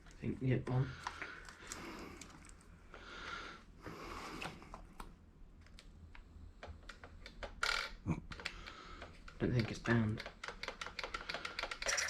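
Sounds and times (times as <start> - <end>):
light plastic clicks: 8.3 - 11.9.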